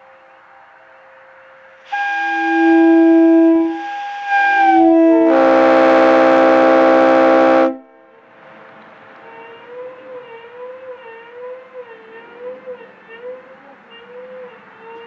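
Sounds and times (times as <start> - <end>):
multi-chime train horn: 0.0 - 8.1, 9.3 - 15.0
harsh air horn blowing: 1.8 - 8.0.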